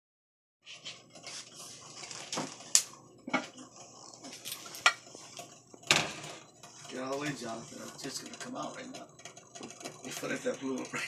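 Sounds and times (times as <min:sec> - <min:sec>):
glass and metal clinking: 0:02.3 - 0:11.0.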